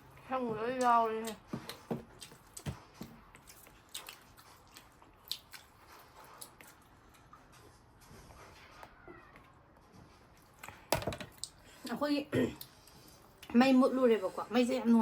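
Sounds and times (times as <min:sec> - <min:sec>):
chewing and biting meat: 0:00.8 - 0:07.4.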